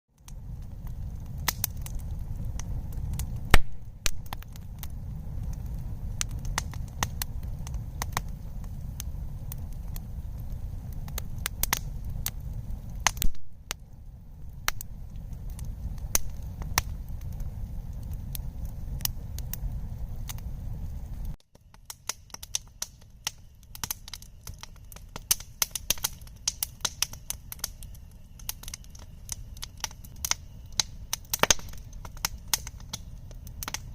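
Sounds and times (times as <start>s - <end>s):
campfire crackling and popping: 0.1s - 33.9s
low rumble: 0.2s - 21.4s.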